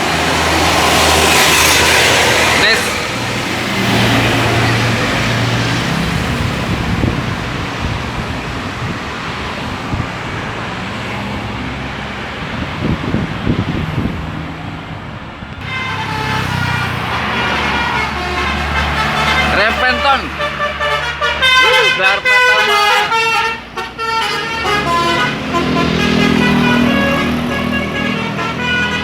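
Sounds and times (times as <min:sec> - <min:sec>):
vehicle engines running: 0:00.0 - 0:29.0
tyre and wind noise: 0:06.1 - 0:15.8.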